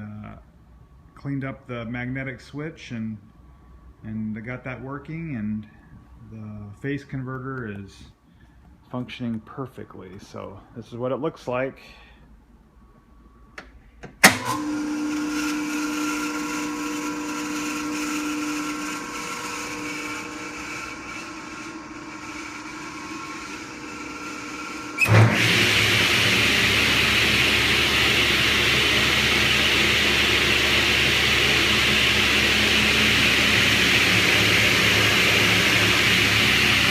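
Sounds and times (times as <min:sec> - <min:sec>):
phase converter humming: 0:12.7 - 0:36.9
table saw whirring: 0:14.2 - 0:36.9.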